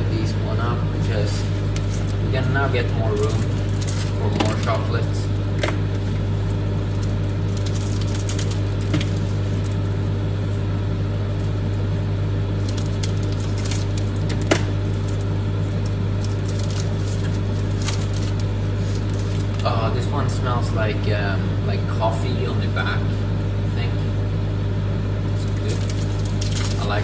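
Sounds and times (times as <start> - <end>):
microwave oven humming: 0.0 - 27.0
wrapper crinkling: 1.5 - 10.6, 12.5 - 19.7, 25.4 - 27.0.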